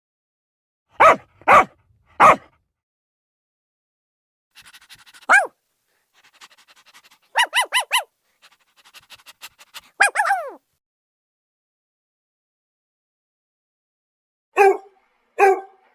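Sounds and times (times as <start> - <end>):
dogs barking: 1.0 - 2.6, 4.6 - 5.5, 6.3 - 8.1, 9.6 - 10.6, 14.6 - 15.9
dog panting: 4.6 - 10.6.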